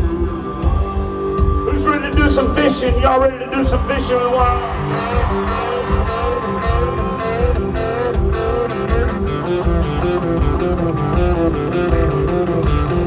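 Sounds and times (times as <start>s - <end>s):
bass: 0.0s - 13.0s
drums on a steady beat: 0.0s - 13.0s
electric guitar: 0.0s - 13.0s.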